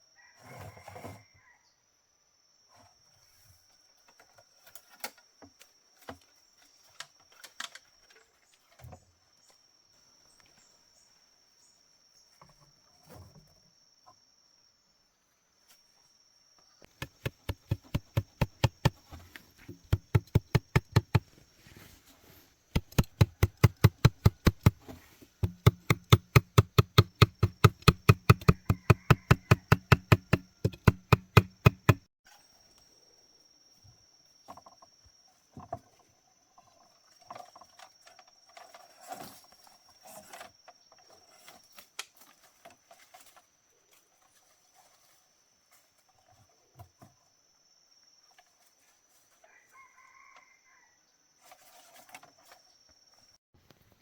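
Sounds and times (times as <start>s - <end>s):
rapid even knocking: 16.9s - 19.1s, 19.7s - 21.3s, 22.8s - 32.1s
quiet scattered taps: 17.0s - 21.3s, 25.4s - 32.0s.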